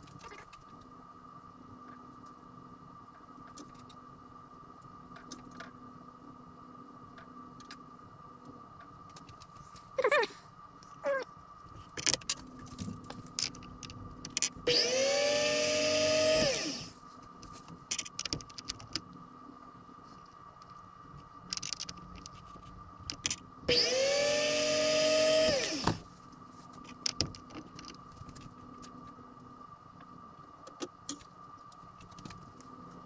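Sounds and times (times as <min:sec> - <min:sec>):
power tool motor whining: 0:14.6 - 0:16.9, 0:23.7 - 0:26.0.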